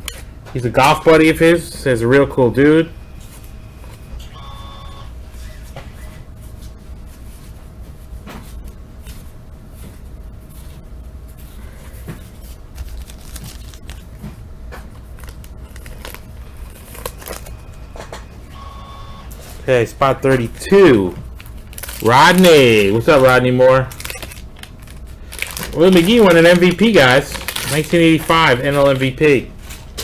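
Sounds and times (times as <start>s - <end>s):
faint steady hum: 0.0s - 30.0s
cards being handled: 8.3s - 18.3s, 19.4s - 30.0s
wax wrapper crinkling: 12.4s - 17.8s, 20.4s - 30.0s.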